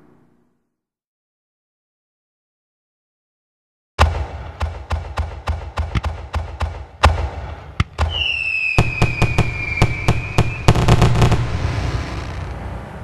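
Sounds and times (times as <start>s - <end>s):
crackling firework volley: 4.0s - 12.7s
firework bangs: 4.0s - 12.7s
firework whistle: 8.0s - 12.5s.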